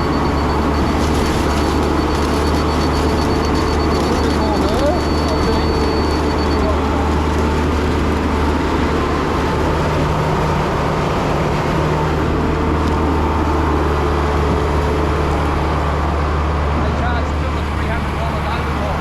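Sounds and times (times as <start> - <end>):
pump engine running under load: 0.0 - 19.0.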